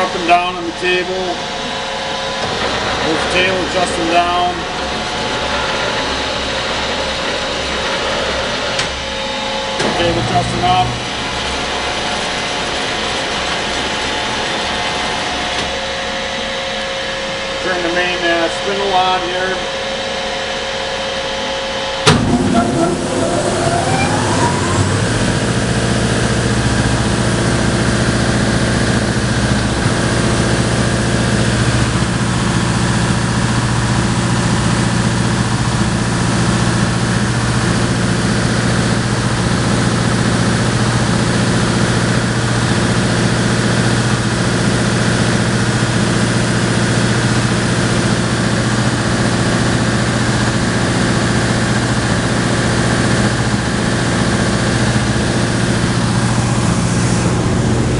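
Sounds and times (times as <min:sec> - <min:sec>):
belt sander humming: 0:22.1 - 0:34.8.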